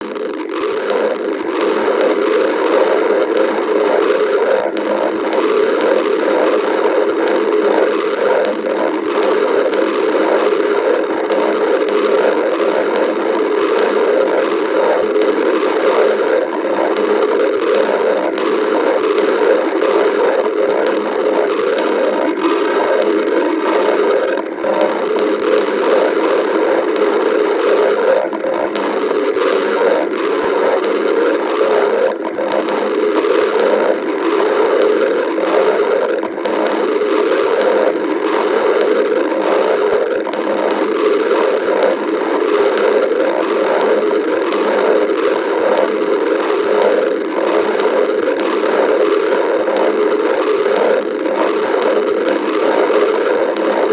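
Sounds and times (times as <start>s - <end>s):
stomach growling: 0.0s - 53.9s.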